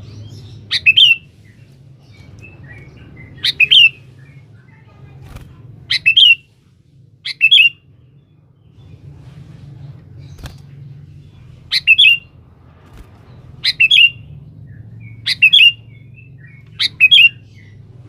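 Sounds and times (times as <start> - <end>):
faint low hum: 0.0 - 18.0
bulbul calling: 0.2 - 1.3, 2.4 - 4.4, 5.9 - 6.5, 7.2 - 7.8, 11.7 - 12.3, 13.6 - 17.8.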